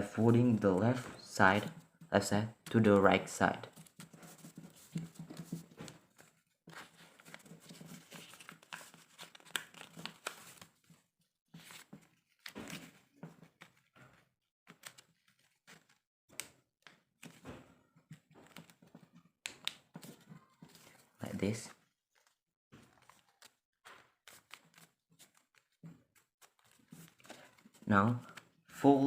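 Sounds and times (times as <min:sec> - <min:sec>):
paper crinkling and rustling: 0:03.6 - 0:17.5, 0:21.8 - 0:28.6.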